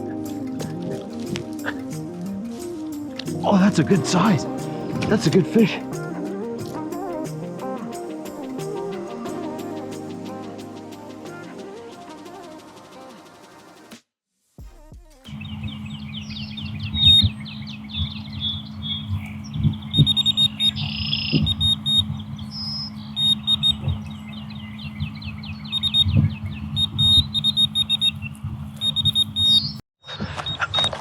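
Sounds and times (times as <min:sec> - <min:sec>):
low hum: 0:00.0 - 0:11.4, 0:15.3 - 0:29.8
bite alarm beeping: 0:15.3 - 0:29.8.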